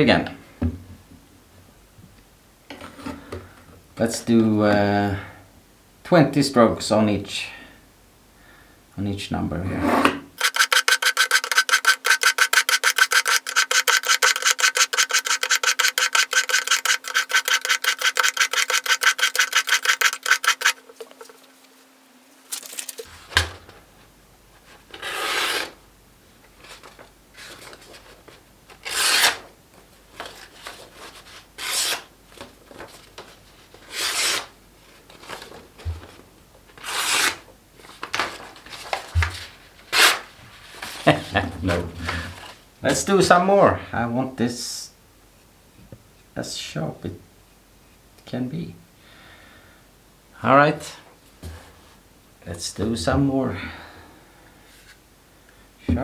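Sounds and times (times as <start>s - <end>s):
knife rasping in sharpener: 9.8s - 21.3s.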